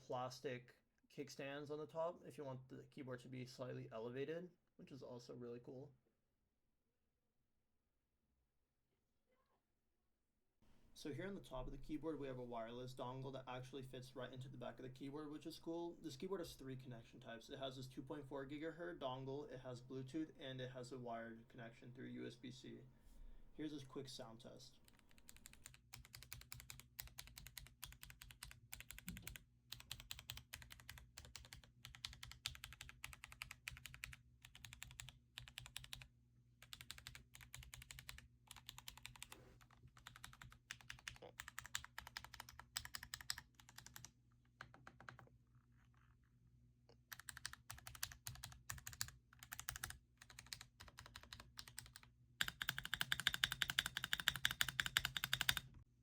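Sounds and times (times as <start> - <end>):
mechanical keyboard typing: 24.8 - 45.2, 47.1 - 55.7.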